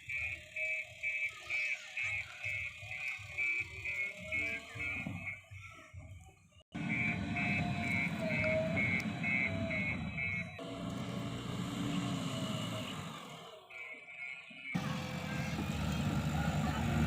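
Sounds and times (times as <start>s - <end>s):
diesel engine running: 6.7s - 13.8s, 14.6s - 17.0s
reversing alarm beeping: 6.8s - 15.6s.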